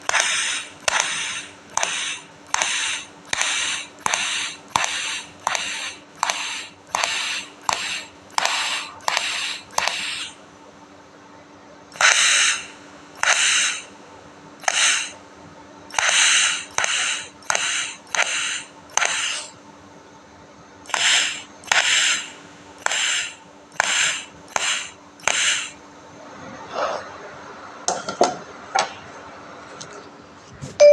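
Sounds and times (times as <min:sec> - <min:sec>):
welding arc crackling hiss: 0:00.0 - 0:10.4, 0:11.9 - 0:13.9, 0:14.6 - 0:15.2, 0:15.9 - 0:19.6, 0:20.9 - 0:25.8
steady low hum: 0:00.0 - 0:30.9.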